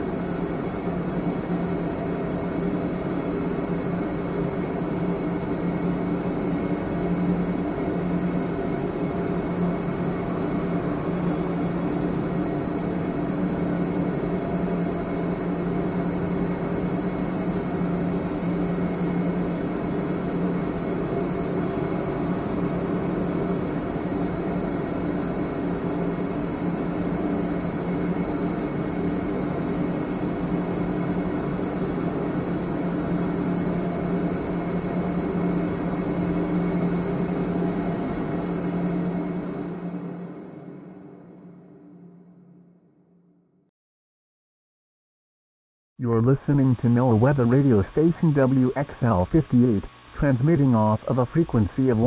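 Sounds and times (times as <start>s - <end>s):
noise hum: 46.0s - 52.0s.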